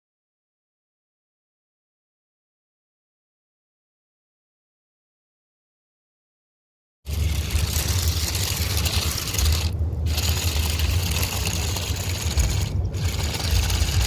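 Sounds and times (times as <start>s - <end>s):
deep rumble: 7.1s - 14.0s
rc car hiss and scraping: 7.1s - 14.0s.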